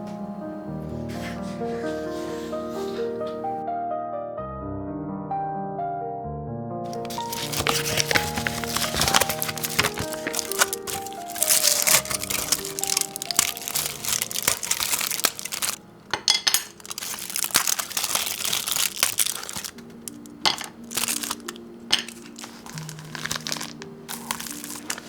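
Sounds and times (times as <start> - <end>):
soft background music: 0.0 - 4.8, 5.4 - 25.0
crinkling and rustling: 6.9 - 25.0.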